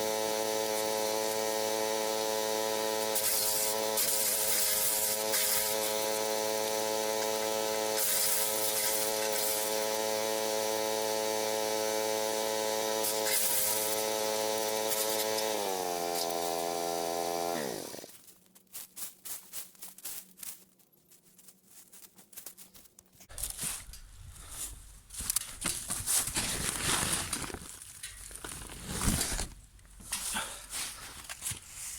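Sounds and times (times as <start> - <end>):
wood chipper engine running: 0.0 - 18.1
rustling: 18.0 - 31.9.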